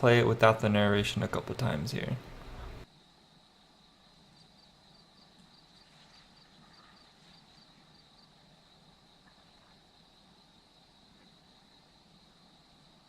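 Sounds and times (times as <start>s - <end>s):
insect buzz: 2.8s - 13.0s.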